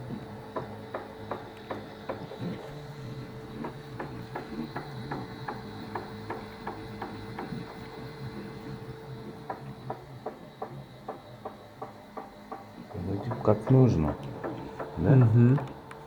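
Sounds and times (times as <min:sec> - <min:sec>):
stepper motors humming: 0:00.0 - 0:16.0
printer sharp ticks: 0:03.6 - 0:08.7, 0:09.4 - 0:16.0.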